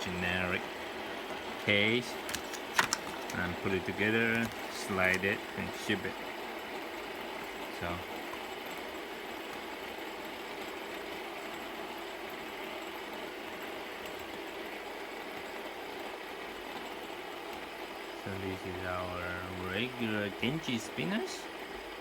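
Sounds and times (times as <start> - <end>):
fidget spinner whirring: 0.0 - 22.0.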